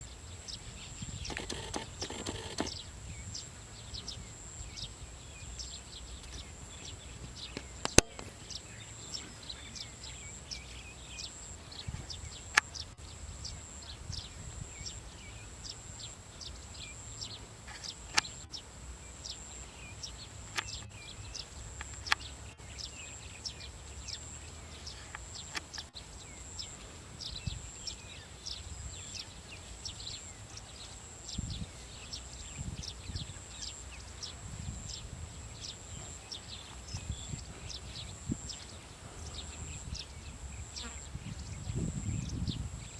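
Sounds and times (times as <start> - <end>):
small birds chirping: 0.0 - 42.9
sharp clicks: 1.2 - 2.8, 7.6 - 8.3, 17.7 - 18.4, 20.5 - 21.0, 21.8 - 22.3.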